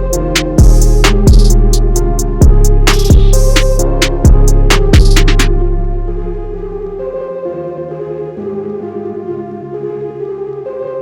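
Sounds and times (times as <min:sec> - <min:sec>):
bass drum hit: 0:02.4 - 0:05.5.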